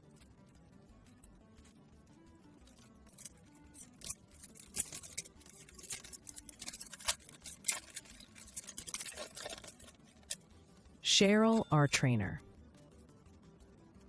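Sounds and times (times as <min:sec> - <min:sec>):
foil wrapper crinkling: 0:02.7 - 0:10.4
foil wrapper snaps: 0:03.1 - 0:10.4.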